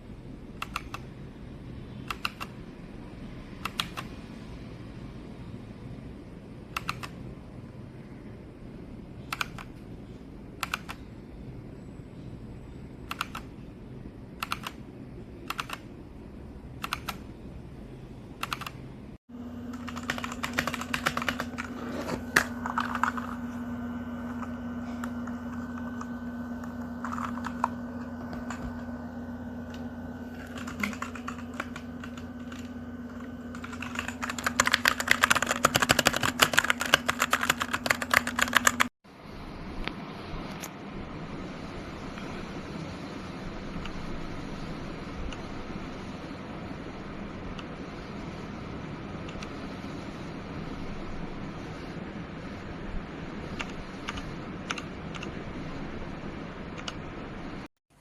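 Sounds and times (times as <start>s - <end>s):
steady low hum: 0.0s - 58.0s
mechanical keyboard typing: 0.6s - 1.1s, 2.0s - 2.6s, 3.6s - 4.1s, 6.7s - 7.2s, 9.3s - 9.8s, 10.6s - 11.0s, 13.0s - 13.6s, 14.4s - 14.8s, 15.4s - 15.9s, 16.8s - 17.3s, 18.4s - 18.8s, 19.6s - 23.5s, 24.3s - 28.9s, 30.4s - 38.9s, 53.6s - 55.4s, 56.8s - 57.0s.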